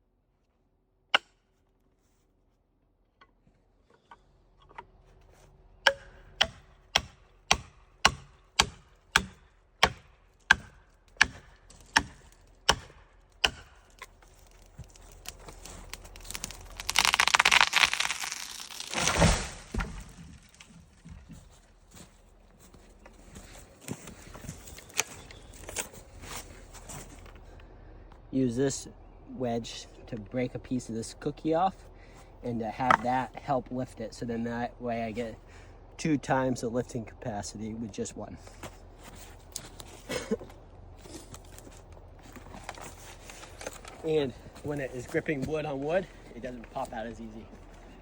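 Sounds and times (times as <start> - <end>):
wood cracking and splitting: 5.9 - 21.6.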